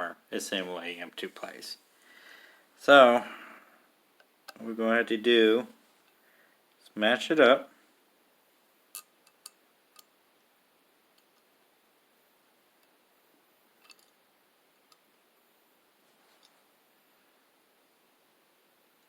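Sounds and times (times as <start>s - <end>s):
faint clicks of small steel parts: 13.8s - 14.2s.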